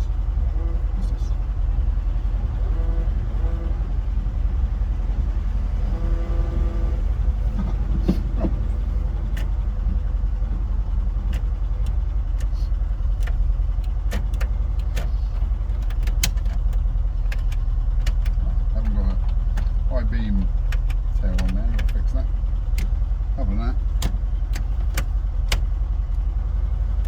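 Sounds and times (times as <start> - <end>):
van engine idling: 0.0 - 27.0
sharp irregular clicks: 11.2 - 19.8, 20.4 - 23.0, 23.9 - 26.2.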